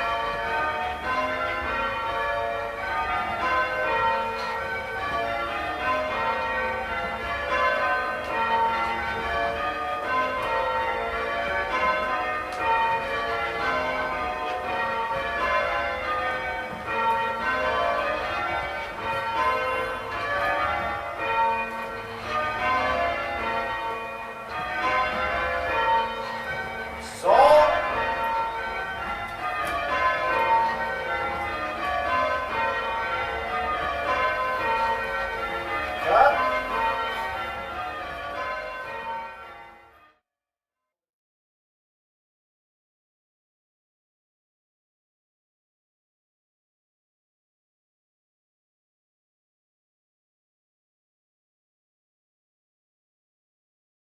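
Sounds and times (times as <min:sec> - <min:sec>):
church bells change ringing: 0:00.0 - 0:40.1
loud vocal call: 0:27.0 - 0:28.0.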